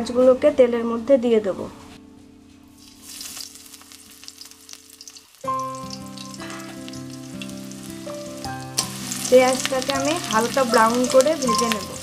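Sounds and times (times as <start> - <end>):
instrumental background music: 0.0 - 12.0
onions sizzling in hot oil: 2.8 - 12.0.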